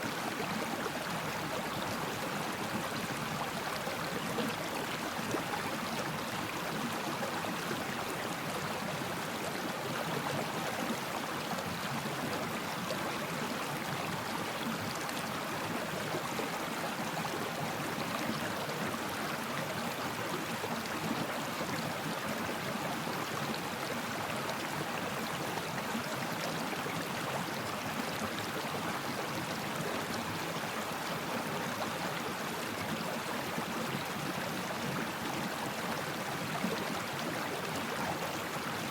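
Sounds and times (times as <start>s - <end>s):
stream flowing over rocks: 0.0s - 38.9s.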